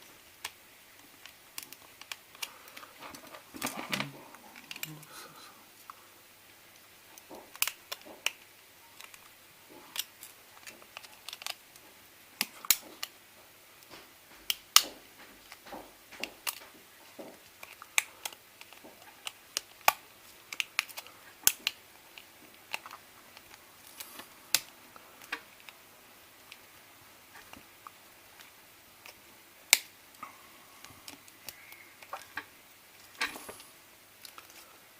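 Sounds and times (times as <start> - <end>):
small plastic parts clicking: 0.4 - 5.1, 7.1 - 11.8, 13.8 - 25.8, 30.8 - 34.7.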